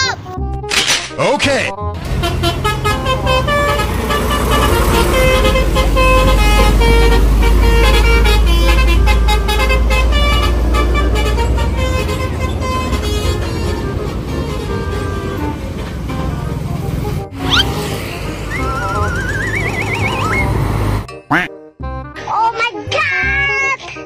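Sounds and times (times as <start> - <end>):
large vehicle engine rumble: 1.8 - 21.1
musical bus horn: 1.8 - 22.0.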